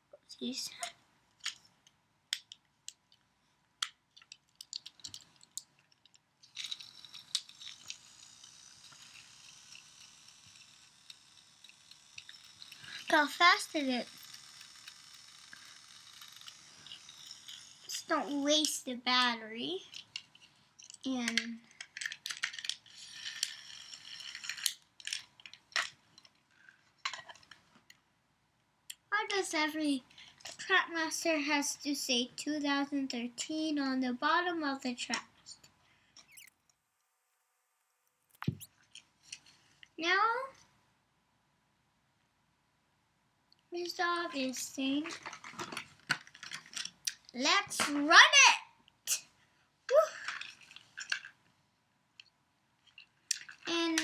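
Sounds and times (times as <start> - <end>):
plastic toy clicks: 3.8 - 17.9, 19.9 - 26.3, 53.0 - 54.0
toy train motor whirring: 6.4 - 27.6, 34.9 - 36.5, 43.8 - 49.3, 49.9 - 51.3, 53.2 - 54.0.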